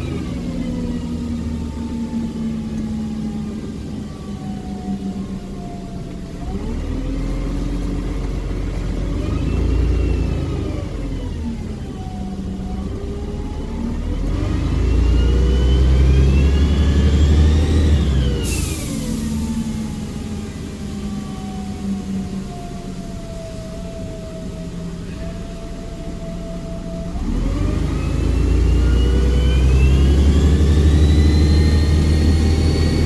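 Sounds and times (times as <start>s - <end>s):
bus engine accelerating: 0.0s - 33.0s
air hiss: 18.4s - 21.2s.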